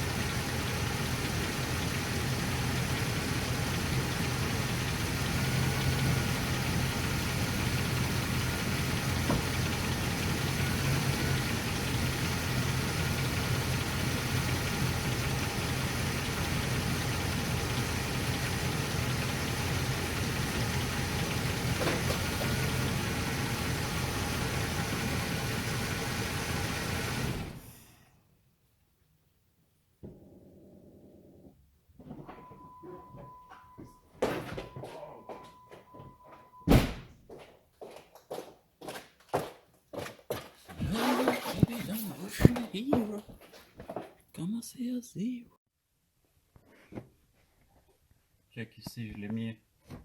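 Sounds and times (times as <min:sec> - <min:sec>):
truck engine running: 0:00.0 - 0:27.9.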